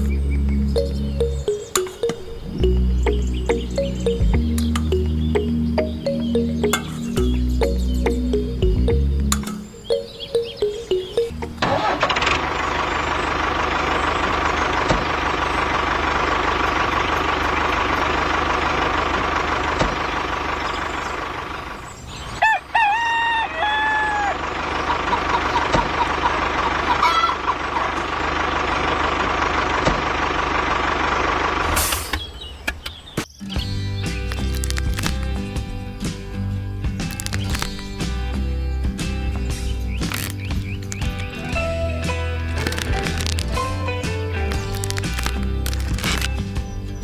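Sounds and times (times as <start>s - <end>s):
rooster crowing: 22.4s - 24.4s
small toy motor running: 34.3s - 35.3s, 37.1s - 37.9s, 40.1s - 41.3s, 42.5s - 43.6s, 44.5s - 46.3s.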